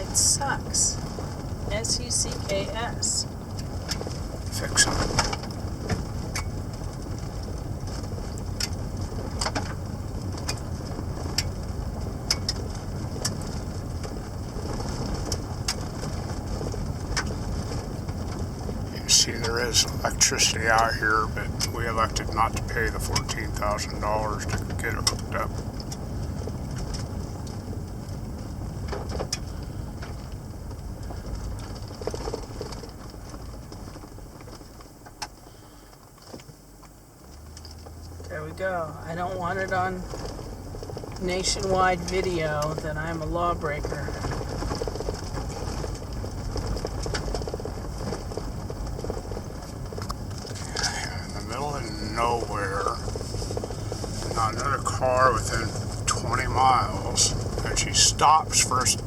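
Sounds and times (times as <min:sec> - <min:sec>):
engine and road rumble: 0:00.0 - 0:59.0.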